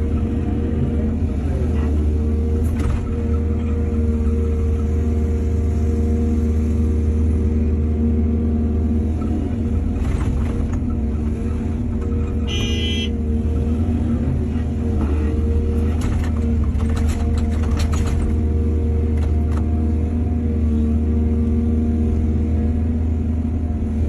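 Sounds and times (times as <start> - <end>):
excavator diesel engine: 0.0 - 24.0
clatter and scraping of soil: 14.5 - 20.1.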